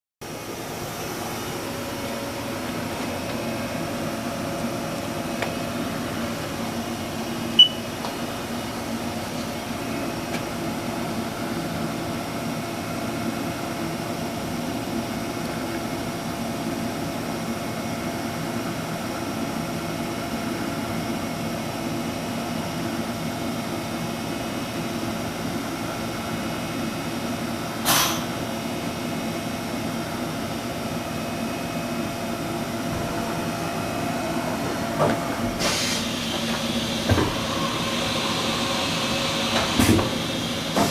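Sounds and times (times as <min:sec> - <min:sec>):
machining center humming: 0:01.0 - 0:11.6, 0:30.5 - 0:40.9
short high beep: 0:07.6 - 0:07.8.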